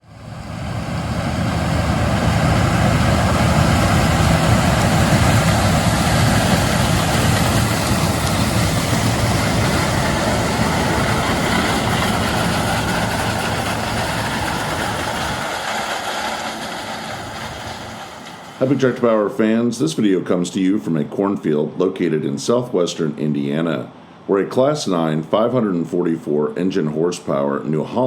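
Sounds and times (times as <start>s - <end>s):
combine engine drone: 0.0s - 28.0s.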